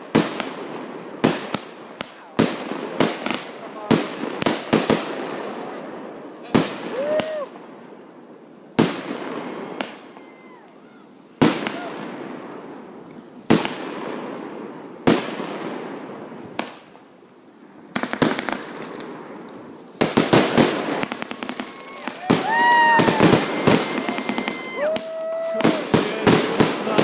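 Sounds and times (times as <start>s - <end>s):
fireworks booming with echo: 0.0s - 27.0s
crackling firework pops: 8.8s - 10.8s, 11.4s - 14.0s, 16.4s - 17.0s, 17.9s - 27.0s.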